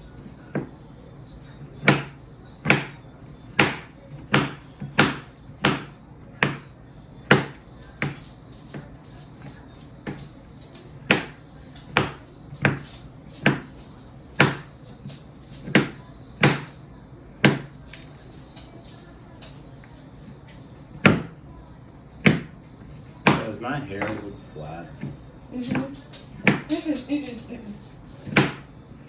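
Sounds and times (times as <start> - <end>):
knife chopping on cutting board: 1.8 - 3.0, 3.6 - 10.2, 11.1 - 13.8, 14.4 - 14.8, 15.6 - 16.8, 17.4 - 17.7, 21.0 - 21.3, 22.2 - 22.6, 23.2 - 24.2, 26.4 - 26.8, 28.2 - 28.7.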